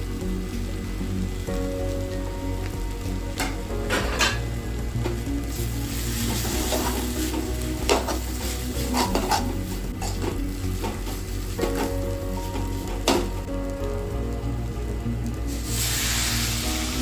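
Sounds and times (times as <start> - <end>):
pork sizzling in a pan: 0.0 - 17.0
spatula scraping a pan: 6.0 - 12.0.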